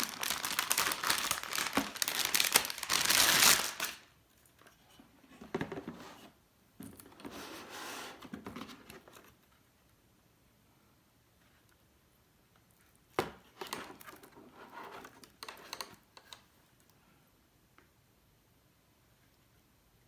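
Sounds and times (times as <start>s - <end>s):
packaging crinkling and rustling: 0.0s - 4.6s.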